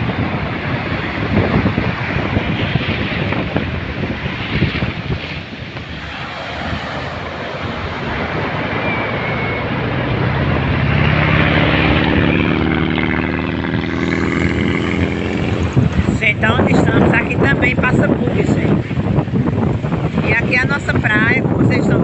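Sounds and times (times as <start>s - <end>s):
surf washing: 0.0s - 22.0s
wind: 0.0s - 22.0s
dune buggy engine passing: 6.1s - 20.2s.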